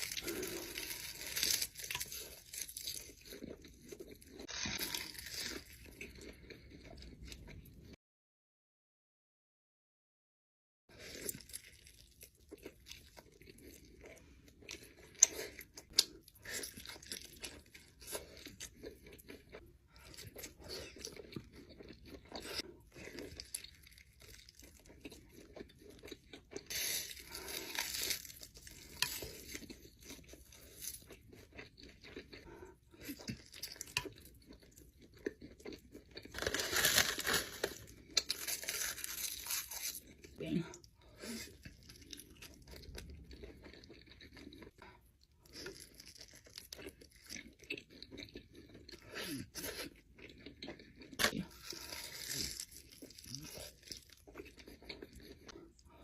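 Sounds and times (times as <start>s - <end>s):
crunchy food being chewed: 0.0s - 8.0s, 10.9s - 56.0s.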